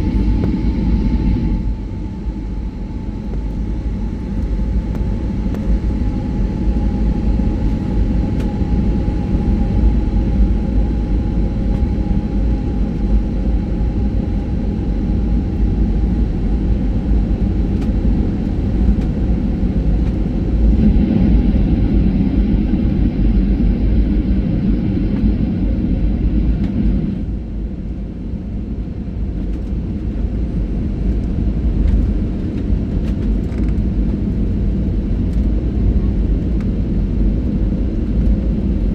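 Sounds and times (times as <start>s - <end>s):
faint whine: 0.0s - 28.3s
jet airliner cabin rumble: 0.0s - 38.9s.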